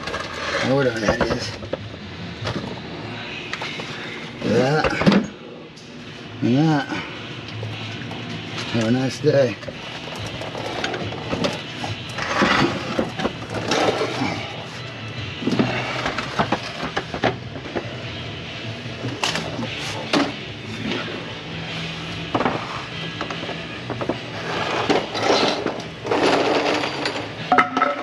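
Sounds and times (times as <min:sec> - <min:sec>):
background music: 0:00.0 - 0:28.0.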